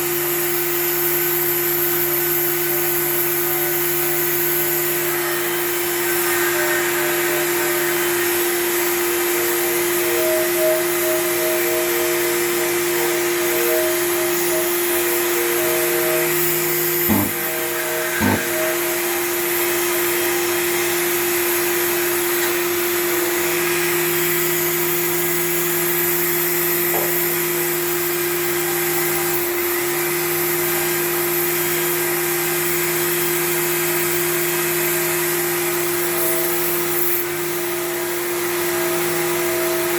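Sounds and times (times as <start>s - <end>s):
power sander running: 11.4s - 20.6s
short knocks: 17.1s - 17.4s, 18.2s - 18.6s.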